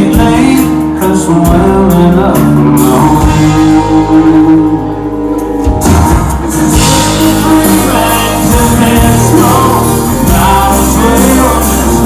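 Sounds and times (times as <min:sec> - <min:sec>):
live country band playing: 0:00.0 - 0:12.0
person singing: 0:00.0 - 0:12.0.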